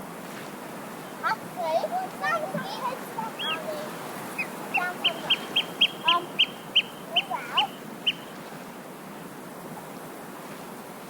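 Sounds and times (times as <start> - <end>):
surf washing: 0.0 - 11.0
lower bird calls: 3.2 - 8.4
bird calling sharp high notes: 4.3 - 8.3.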